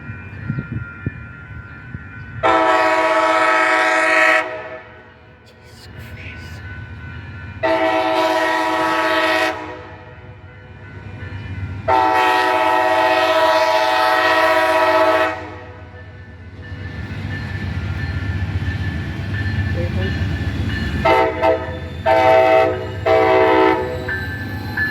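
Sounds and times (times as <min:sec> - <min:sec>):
train rumble: 0:00.0 - 0:24.9
locomotive air horn: 0:02.4 - 0:05.0, 0:07.6 - 0:10.0, 0:11.9 - 0:15.8, 0:21.0 - 0:24.0.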